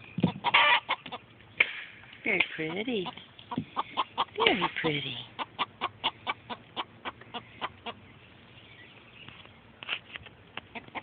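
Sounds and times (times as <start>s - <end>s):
chickens clucking: 0.0s - 1.8s, 2.4s - 8.4s, 10.6s - 11.0s.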